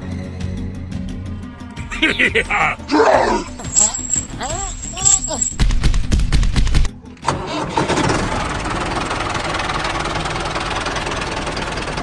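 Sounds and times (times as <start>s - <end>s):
engine cranking and running: 7.2s - 12.0s.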